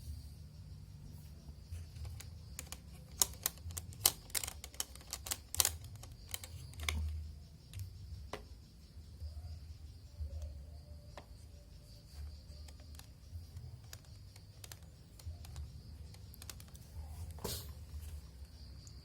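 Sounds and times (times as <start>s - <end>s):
plastic vent louvers clicking: 2.0s - 7.2s.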